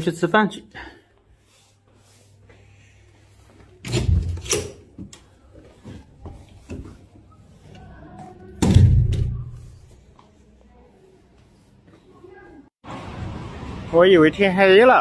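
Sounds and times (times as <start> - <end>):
door banging shut: 3.8 - 4.8, 8.6 - 9.6.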